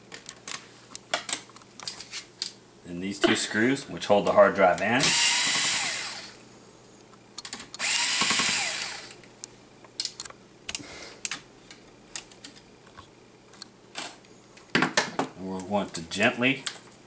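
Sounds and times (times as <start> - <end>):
electric screwdriver motor whirring: 5.0 - 6.4, 7.8 - 9.2.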